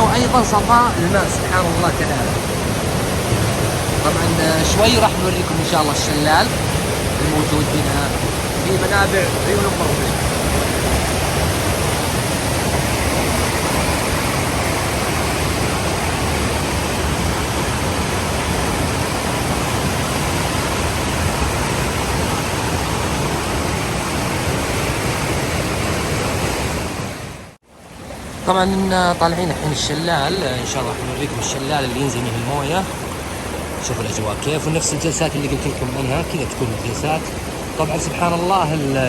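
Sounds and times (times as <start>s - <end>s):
river water rushing: 0.0s - 39.0s.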